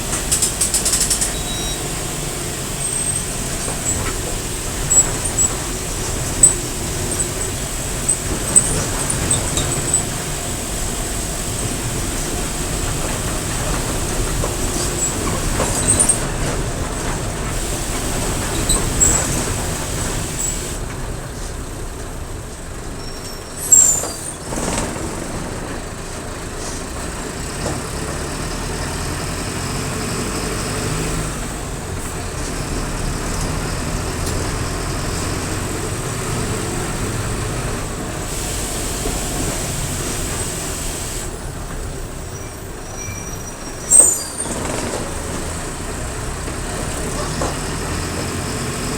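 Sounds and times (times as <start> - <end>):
air brake hisses: 0.0 - 16.3, 17.5 - 20.8, 23.6 - 24.4, 35.6 - 44.7
bus diesel engine running: 0.0 - 48.9.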